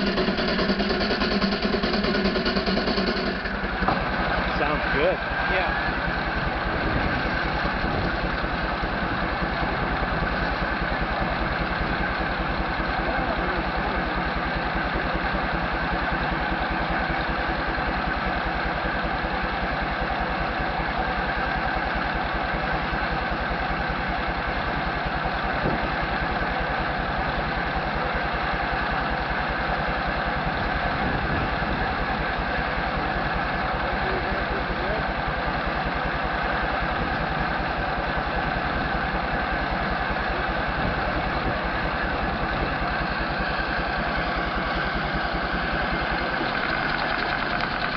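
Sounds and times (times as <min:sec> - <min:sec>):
steam engine running: 0:00.0 - 0:20.0, 0:39.1 - 0:47.9.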